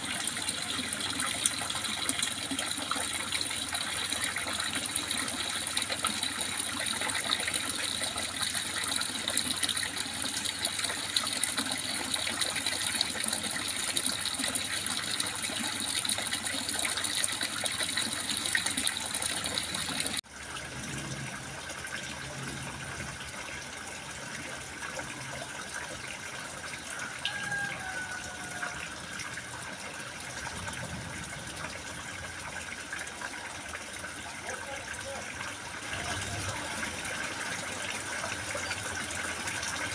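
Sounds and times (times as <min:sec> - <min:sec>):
running water splashing: 0:00.0 - 0:23.4.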